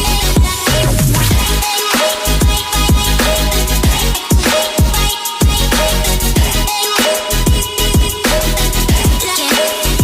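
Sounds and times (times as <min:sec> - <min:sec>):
drum and bass dance music: 0:00.0 - 0:10.0.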